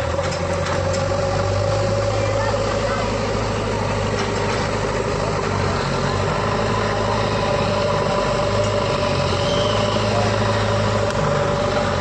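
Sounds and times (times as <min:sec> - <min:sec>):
diesel engine idling: 0:00.0 - 0:12.0.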